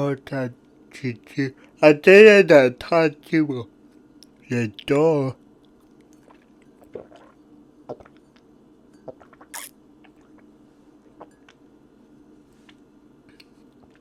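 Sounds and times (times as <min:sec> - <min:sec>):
faint steady hum: 0:00.0 - 0:14.0
lip smacks: 0:09.1 - 0:10.5.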